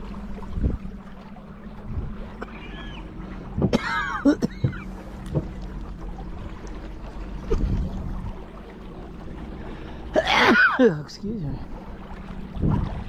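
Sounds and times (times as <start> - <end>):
water rushing: 0.0 - 13.0
paddle knocking against hull: 3.5 - 5.8.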